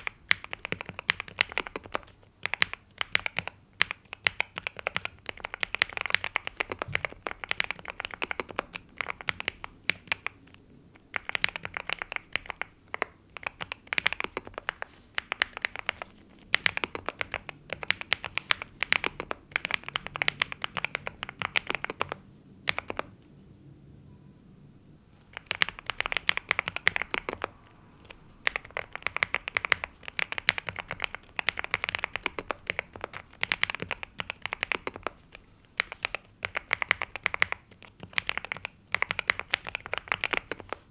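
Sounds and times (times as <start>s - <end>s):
mechanical keyboard typing clacks: 0.0s - 23.1s, 25.2s - 40.9s.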